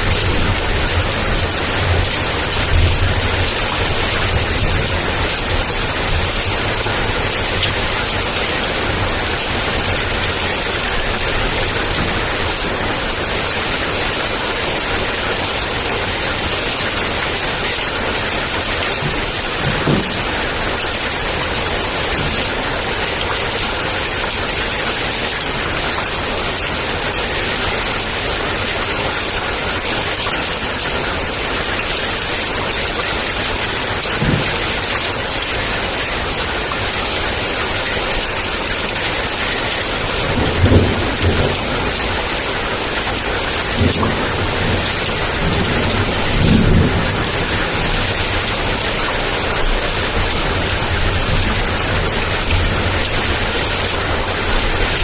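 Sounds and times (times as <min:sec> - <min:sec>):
thunder rumbling: 0:00.0 - 0:24.6, 0:40.0 - 0:55.0
heavy rain: 0:00.0 - 0:55.0.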